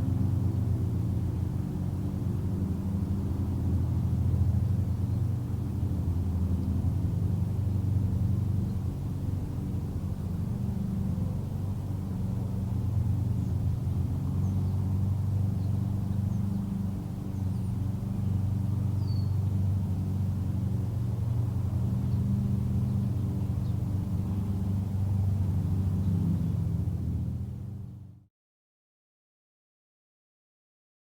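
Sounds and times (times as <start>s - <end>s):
lawn mower engine running: 7.7s - 27.9s
faint bird chirps: 19.0s - 19.4s.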